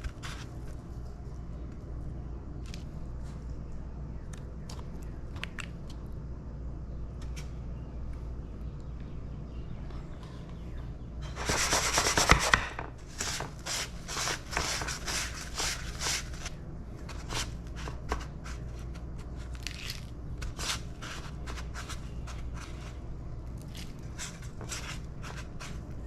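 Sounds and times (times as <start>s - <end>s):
food scraping strokes: 11.2s - 26.0s.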